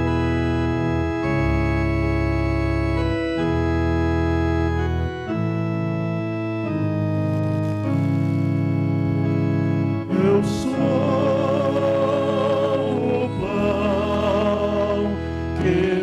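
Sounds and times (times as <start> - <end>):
organ chords: 0.0 - 16.0.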